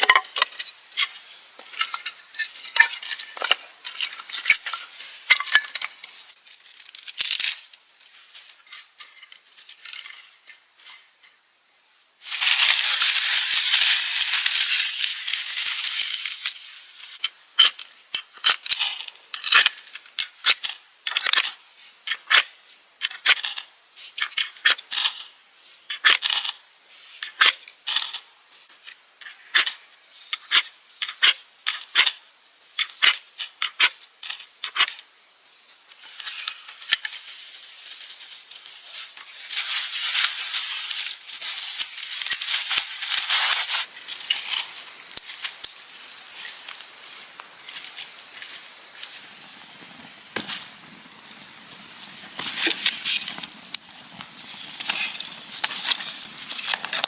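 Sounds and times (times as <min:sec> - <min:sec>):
dry crackles and rustling: 0:00.1 - 0:11.0, 0:12.2 - 0:17.3, 0:35.9 - 0:57.0.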